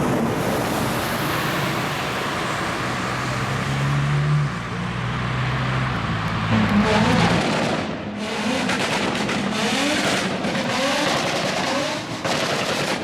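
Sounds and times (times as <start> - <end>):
car engine revving: 2.8 - 12.4.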